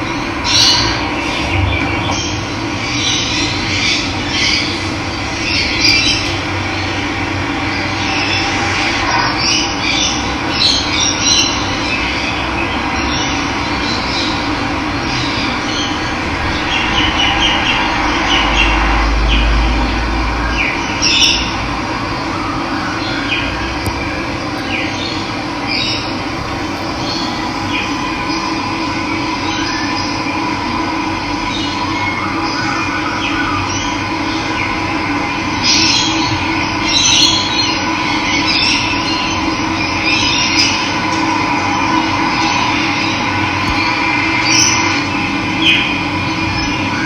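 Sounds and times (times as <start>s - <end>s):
low rumble: 0.8s - 4.2s, 14.3s - 22.5s, 23.5s - 31.5s
birds chirping and calling: 24.6s - 30.2s.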